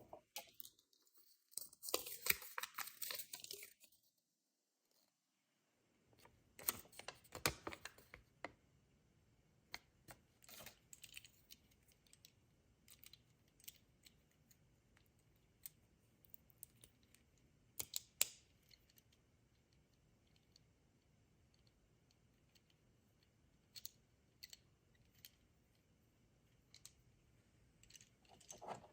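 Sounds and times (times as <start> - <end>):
plastic toy parts clicking: 23.6 - 25.4.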